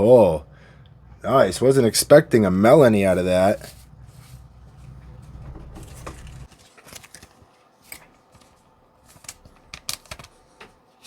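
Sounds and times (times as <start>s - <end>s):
low hum: 0.0s - 6.5s
trading cards clicking and flicking: 9.1s - 10.7s.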